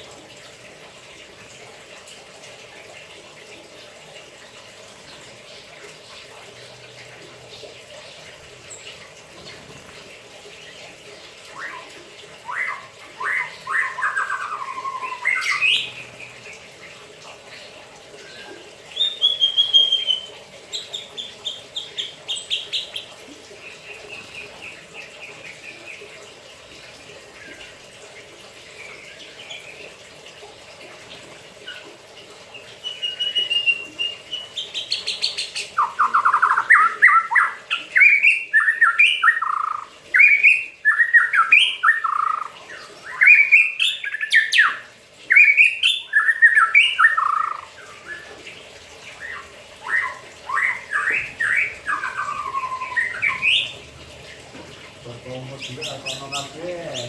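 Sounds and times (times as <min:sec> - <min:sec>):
songbird singing whistled phrases: 0:12.5 - 0:16.2, 0:19.0 - 0:20.3, 0:32.8 - 0:42.5, 0:43.1 - 0:48.3, 0:49.2 - 0:53.8.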